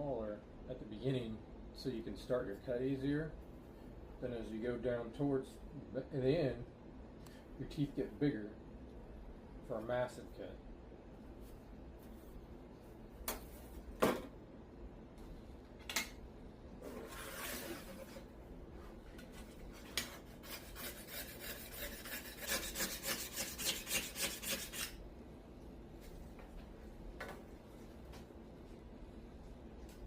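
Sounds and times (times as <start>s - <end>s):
hand rubbing steel saw plate: 20.1s - 25.0s.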